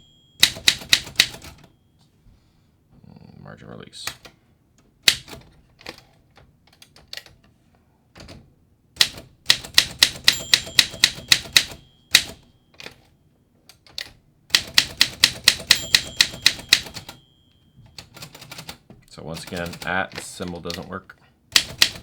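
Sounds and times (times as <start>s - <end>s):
typewriter bell ringing: 0.0s - 1.8s, 9.8s - 12.9s, 14.6s - 18.7s
typewriter keystrokes: 0.4s - 1.7s, 5.1s - 6.0s, 9.0s - 13.0s, 13.8s - 17.2s, 18.0s - 22.0s.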